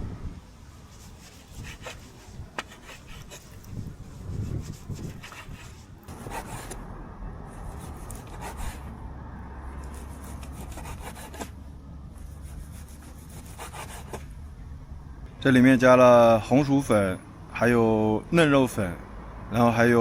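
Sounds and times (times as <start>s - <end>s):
knife scraping through meat: 1.0s - 6.8s, 7.6s - 8.9s, 9.8s - 11.5s, 12.4s - 14.2s.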